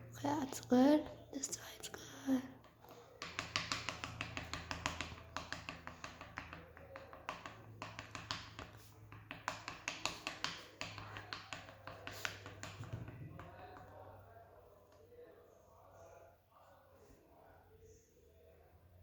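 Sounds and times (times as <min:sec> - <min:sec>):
utensil tapping against container: 0:02.6 - 0:14.0.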